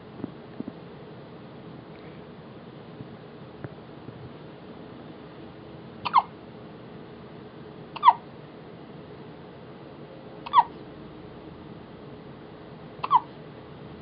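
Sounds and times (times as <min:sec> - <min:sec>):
baby hiccupping: 0:06.0 - 0:06.3, 0:08.0 - 0:08.2, 0:10.5 - 0:10.8, 0:13.0 - 0:13.3.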